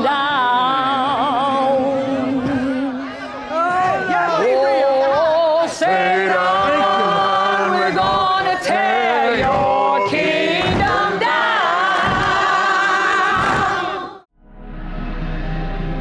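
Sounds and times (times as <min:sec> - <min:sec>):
gospel choir singing: 0:04.1 - 0:14.3
soft ambient music: 0:14.4 - 0:16.0.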